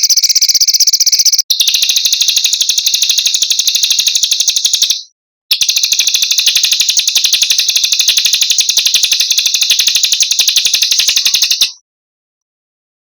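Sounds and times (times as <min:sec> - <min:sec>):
songbird buzzing trill: 0:05.7 - 0:11.7.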